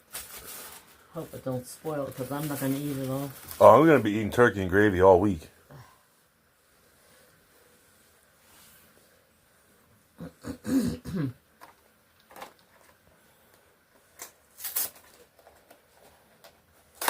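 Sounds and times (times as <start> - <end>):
person clearing throat: 10.2 - 11.4.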